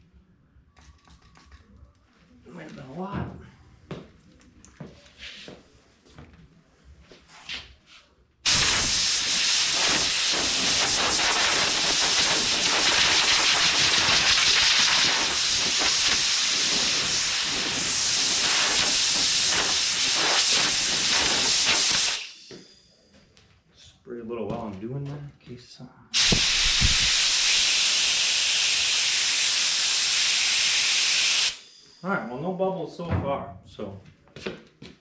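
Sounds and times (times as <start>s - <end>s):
compressed air hissing: 8.5s - 22.5s, 26.2s - 31.7s.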